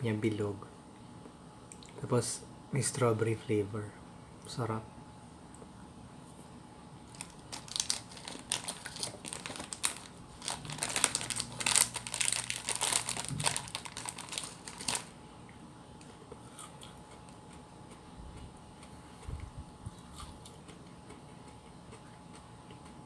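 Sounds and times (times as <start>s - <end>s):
plastic wrapper crinkling: 7.1s - 15.2s.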